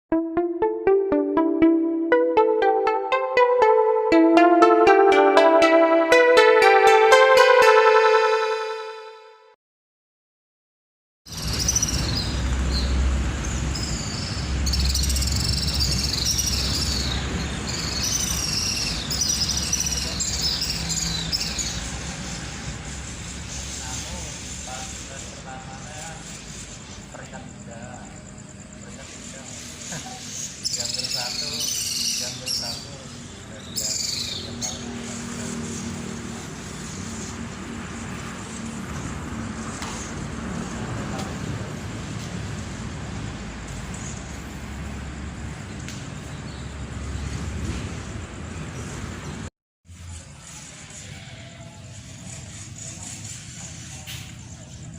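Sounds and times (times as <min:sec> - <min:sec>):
bird chirp: 0:11.3 - 0:22.4, 0:29.2 - 0:34.8.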